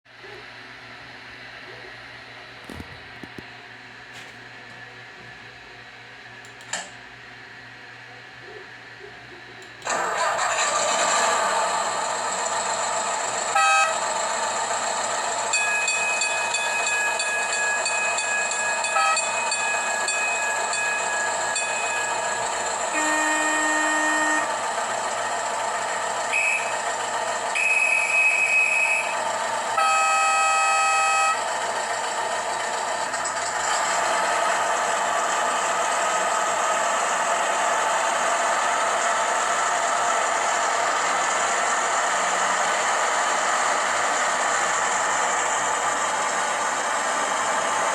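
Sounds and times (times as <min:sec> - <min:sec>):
toy engine running sound: 0:09.8 - 0:47.9
horn toots: 0:13.5 - 0:14.0, 0:22.9 - 0:24.5, 0:29.7 - 0:31.4.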